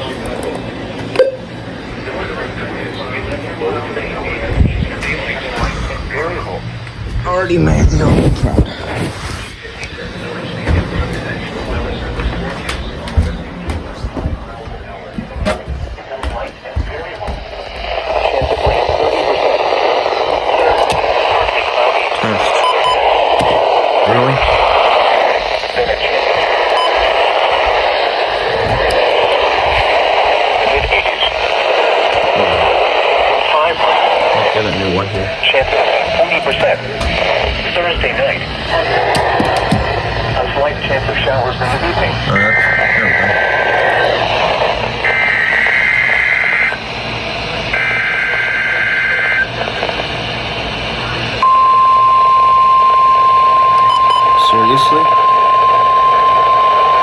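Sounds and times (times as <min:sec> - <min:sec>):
faint broadcast voice: 0:00.0 - 0:57.0
radio static hiss: 0:00.0 - 0:57.0
steady warning alarm tone: 0:09.8 - 0:57.0
warbling data bursts: 0:16.9 - 0:39.1, 0:41.9 - 0:49.7, 0:51.4 - 0:57.0.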